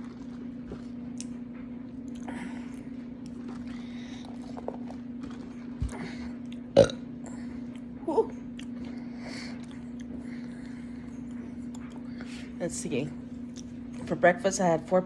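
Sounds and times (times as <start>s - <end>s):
woman burping: 6.8s - 7.0s.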